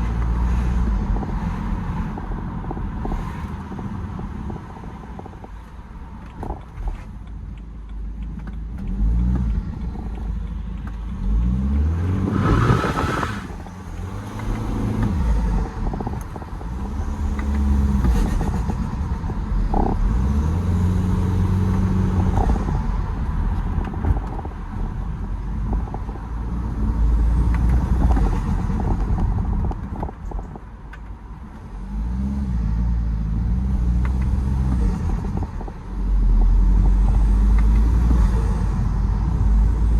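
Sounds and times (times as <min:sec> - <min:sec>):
diesel engine revving: 0:11.0 - 0:18.8.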